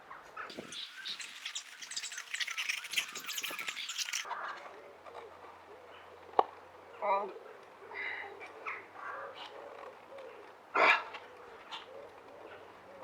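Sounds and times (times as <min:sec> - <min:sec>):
birds chirping faintly: 0:00.5 - 0:04.3.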